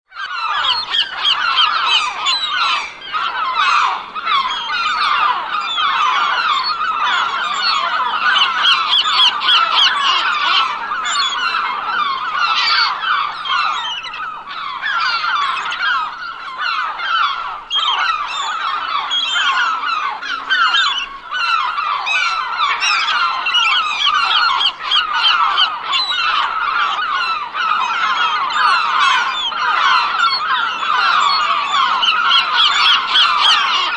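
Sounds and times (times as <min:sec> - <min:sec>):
seagulls calling: 0:00.1 - 0:33.9.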